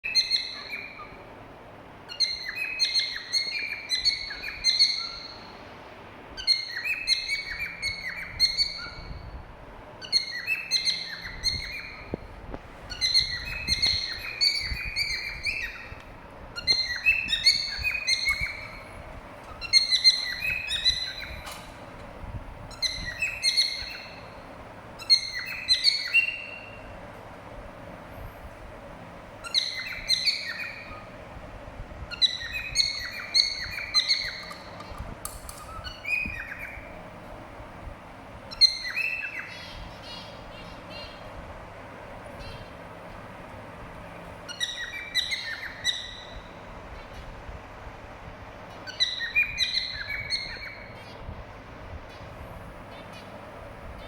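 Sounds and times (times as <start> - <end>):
cockatiel whistling and chirping: 0.1 - 1.1, 2.1 - 5.4, 6.4 - 9.1, 10.0 - 12.2, 12.9 - 15.9, 16.6 - 18.8, 19.5 - 21.4, 22.7 - 24.2, 25.0 - 26.8, 29.4 - 31.1, 32.1 - 34.5, 35.7 - 36.8, 38.5 - 40.2, 44.5 - 46.4, 48.8 - 51.1.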